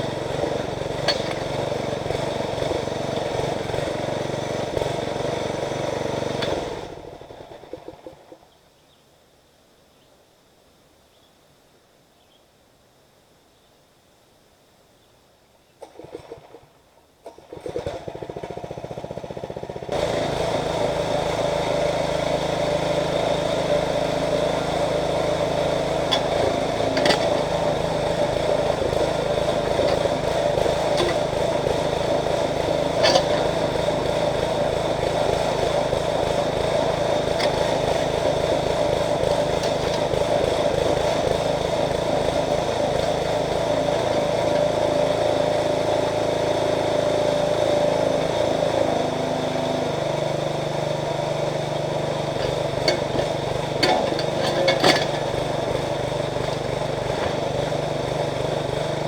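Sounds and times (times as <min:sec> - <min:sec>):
small gasoline engine running: 0:00.0 - 0:08.4, 0:15.8 - 0:59.0.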